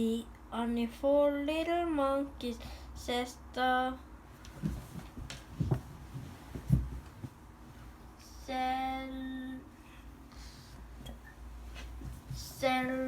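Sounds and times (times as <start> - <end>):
soft low thumps: 4.4 - 7.6.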